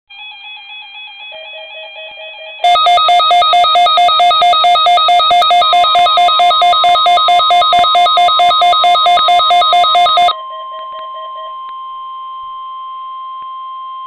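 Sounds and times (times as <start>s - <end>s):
quiet electronic tones: 2.6s - 10.3s
loud fast beeping alarm: 2.6s - 10.4s
steady alarm tone: 2.6s - 10.4s.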